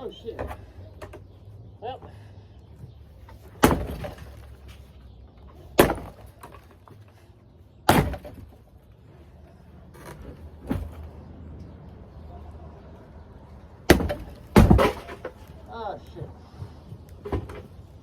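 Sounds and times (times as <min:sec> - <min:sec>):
sledgehammer striking hot tub: 0:03.6 - 0:04.2, 0:05.8 - 0:06.2, 0:07.9 - 0:08.4, 0:13.9 - 0:15.2.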